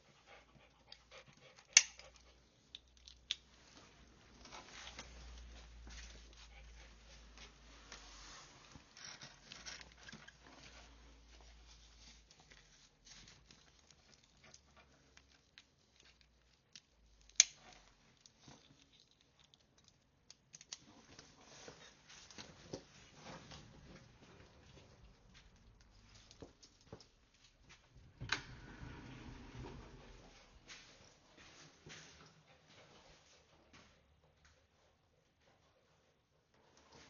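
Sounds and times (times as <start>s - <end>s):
clothing rustle: 3.4s - 19.1s, 20.8s - 28.0s, 29.2s - 33.9s
footsteps: 30.0s - 34.0s.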